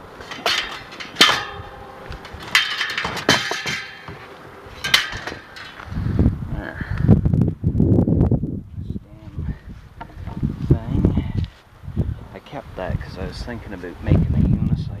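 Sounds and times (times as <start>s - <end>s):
metal bike parts clanking: 0.0s - 6.2s
wind rumble on microphone: 4.7s - 15.0s.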